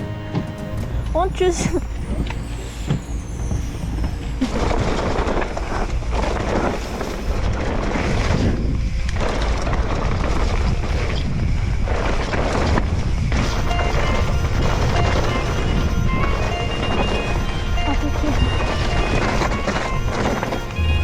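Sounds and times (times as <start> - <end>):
low rumble: 0.0 - 21.0
wind buffeting microphone: 0.8 - 21.0.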